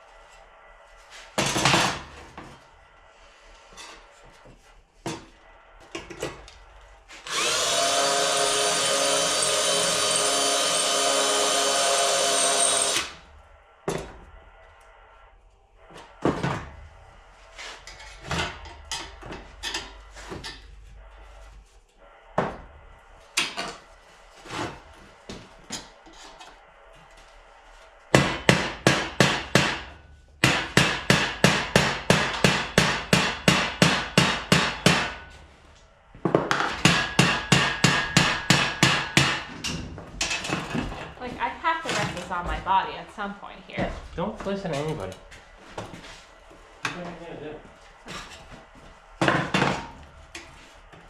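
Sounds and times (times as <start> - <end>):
hammer striking steel: 28.1 - 35.3, 36.5 - 39.6.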